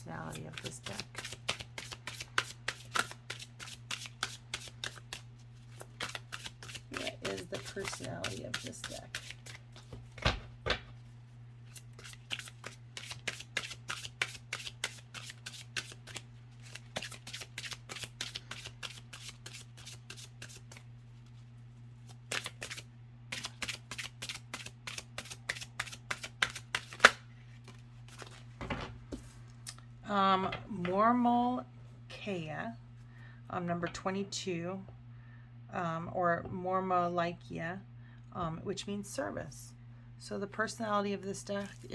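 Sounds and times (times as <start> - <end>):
cards being shuffled: 0.2 - 11.0, 11.7 - 21.4, 22.0 - 29.5.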